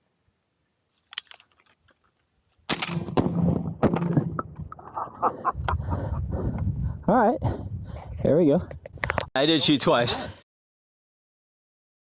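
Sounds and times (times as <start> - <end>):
shotgun shots: 2.7 - 4.4.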